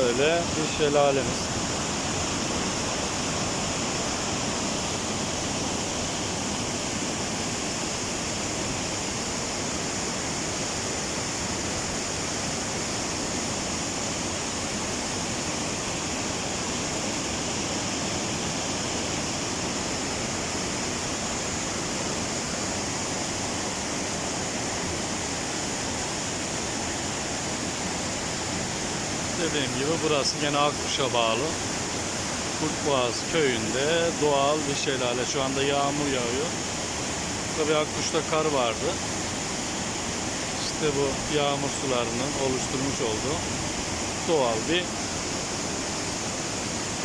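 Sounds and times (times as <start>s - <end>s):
waterfall pouring: 27.6s - 46.0s.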